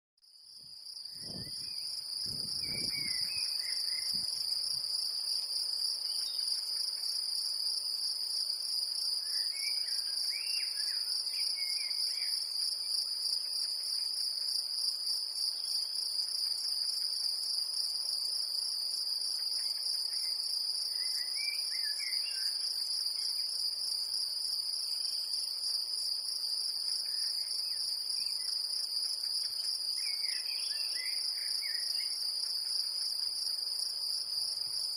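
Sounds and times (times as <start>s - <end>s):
bush-cricket buzzing: 0.4s - 34.9s.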